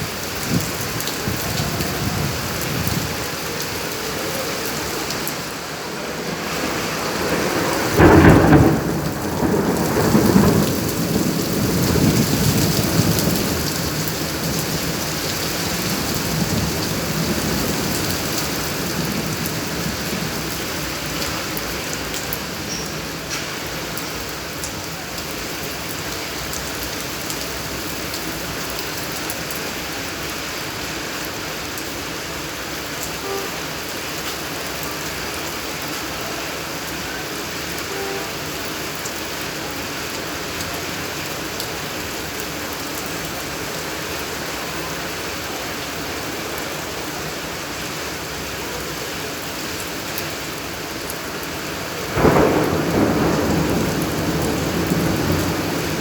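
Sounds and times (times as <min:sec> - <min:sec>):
thunder rumble: 0:00.0 - 0:24.6, 0:51.9 - 0:56.0
steady rain falling: 0:00.0 - 0:56.0.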